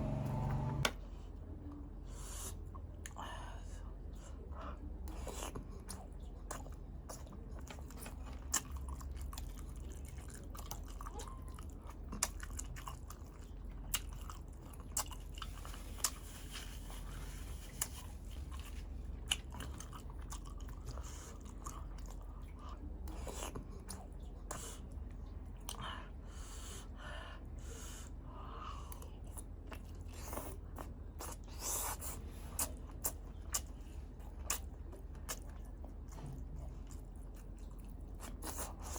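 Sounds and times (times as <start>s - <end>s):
steady low hum: 0.0s - 7.9s.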